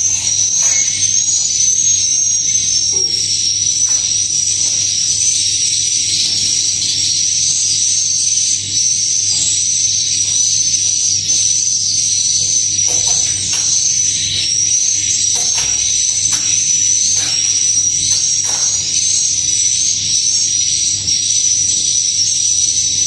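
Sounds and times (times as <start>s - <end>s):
sharp clicks: 12.9s - 19.2s.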